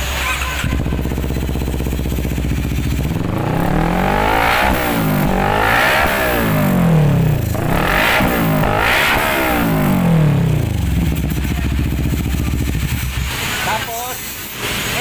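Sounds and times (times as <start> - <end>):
motorcycle engine idling and revving: 0.0 - 15.0.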